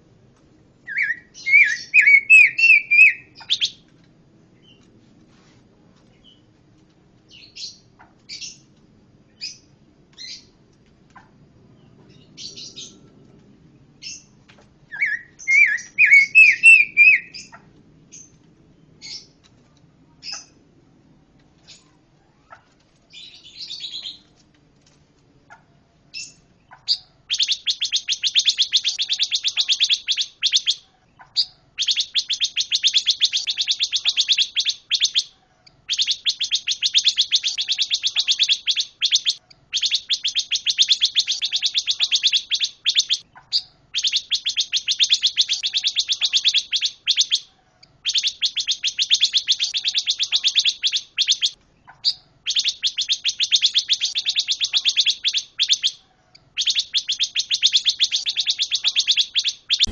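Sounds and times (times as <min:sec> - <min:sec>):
short bird calls: 0:00.9 - 0:03.8, 0:14.9 - 0:17.6
songbird singing rapid trills: 0:00.9 - 0:03.8, 0:14.9 - 0:17.6, 0:26.2 - 0:35.3, 0:35.9 - 0:59.9.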